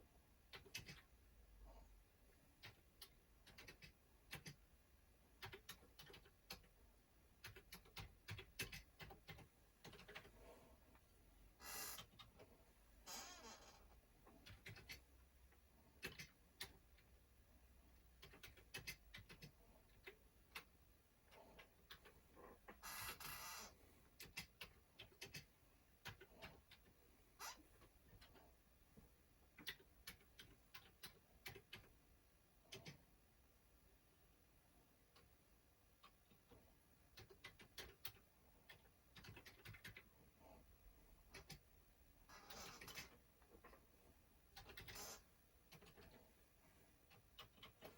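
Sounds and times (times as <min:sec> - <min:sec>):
keyboard keys clicking: 0:02.6 - 0:04.6, 0:05.4 - 0:06.7, 0:07.4 - 0:10.3, 0:14.4 - 0:15.0, 0:37.1 - 0:40.0.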